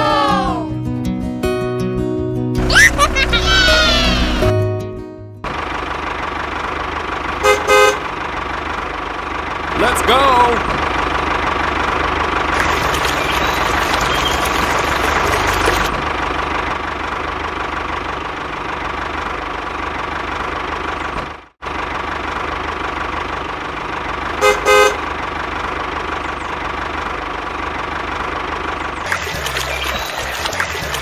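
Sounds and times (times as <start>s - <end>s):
horn toots: 7.4s - 8.2s, 24.3s - 25.1s.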